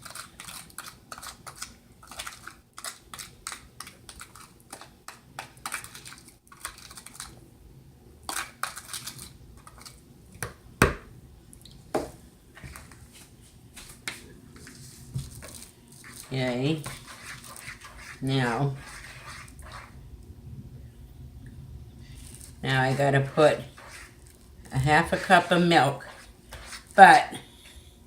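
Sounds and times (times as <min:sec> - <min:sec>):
utensil scraping a mixing bowl: 0:00.0 - 0:07.4, 0:14.0 - 0:20.0, 0:22.0 - 0:27.7.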